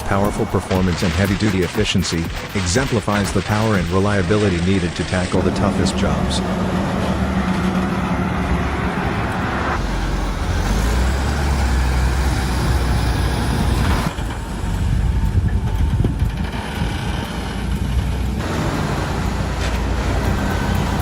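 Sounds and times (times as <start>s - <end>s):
diesel engines rumbling: 0.0s - 21.0s.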